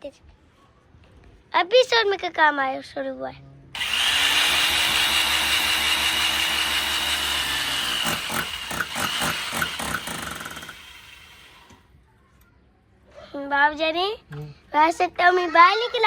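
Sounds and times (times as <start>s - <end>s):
electric drill boring into wall: 3.8s - 11.8s.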